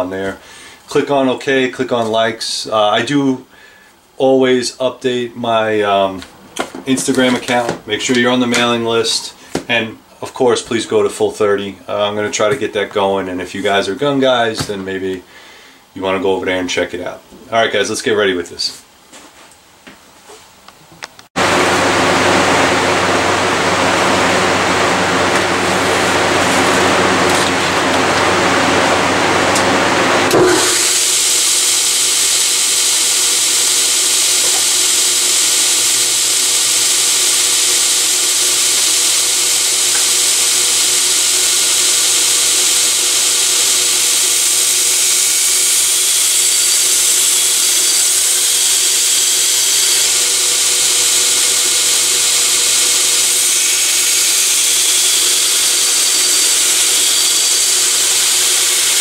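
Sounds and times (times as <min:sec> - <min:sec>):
belt grinder grinding steel: 0:25.0 - 0:59.0.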